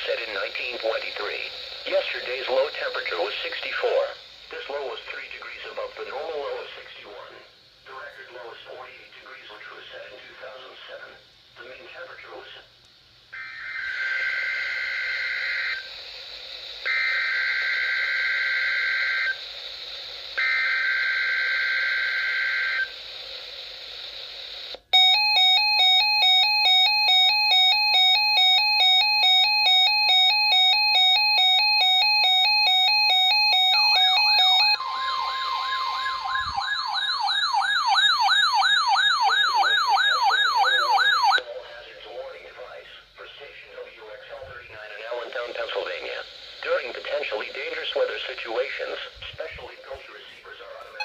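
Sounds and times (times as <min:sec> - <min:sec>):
two-tone digital header data: 0:00.0 - 0:06.9, 0:27.6 - 0:37.6, 0:43.2 - 0:51.0
siren-like rising sweep: 0:32.4 - 0:41.4.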